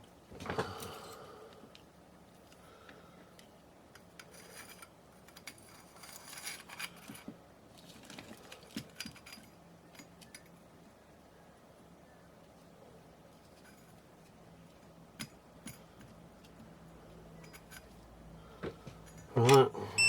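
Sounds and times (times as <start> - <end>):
light clicks and metallic clinks: 8.0 - 10.6, 17.3 - 18.1, 18.8 - 19.6.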